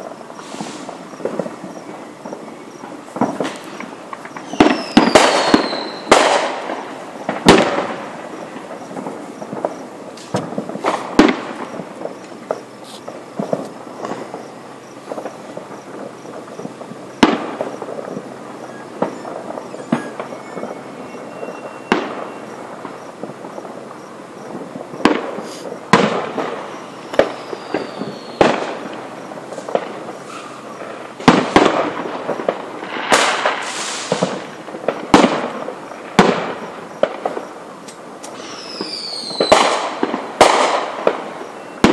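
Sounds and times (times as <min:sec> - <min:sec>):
falling firework whistle: 0:00.0 - 0:37.6, 0:38.2 - 0:41.9
fireworks bangs: 0:00.0 - 0:41.9
fireworks crackling: 0:00.0 - 0:41.9.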